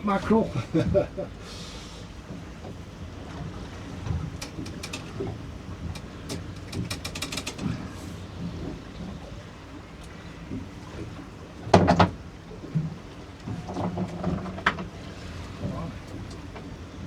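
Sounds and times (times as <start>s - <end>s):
low rumble of wind and sea: 0.0s - 17.0s.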